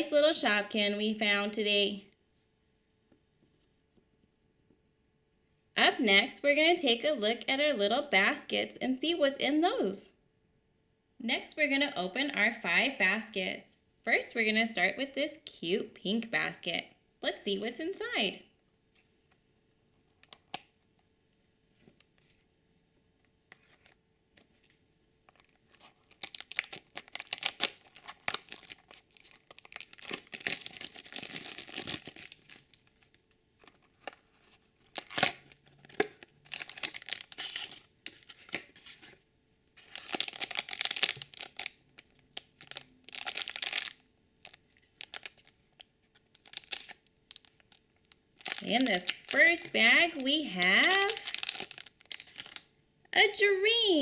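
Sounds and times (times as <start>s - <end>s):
plastic packaging tearing and crinkling: 25.3s - 39.2s, 39.8s - 49.8s, 50.6s - 52.7s.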